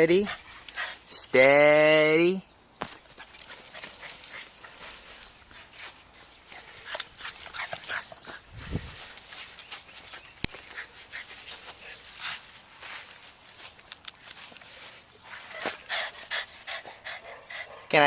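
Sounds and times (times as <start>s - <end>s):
light clicks and rustling: 2.8s - 17.6s.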